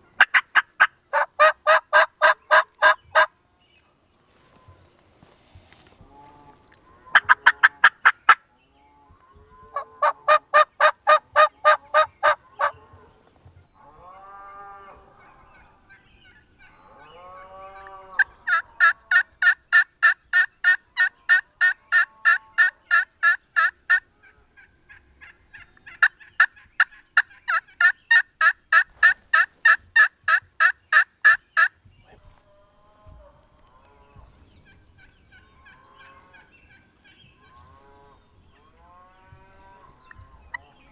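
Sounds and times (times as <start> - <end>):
turkey yelping: 0.2 - 3.3, 7.1 - 8.4, 9.8 - 13.0, 24.9 - 32.2, 34.6 - 37.6.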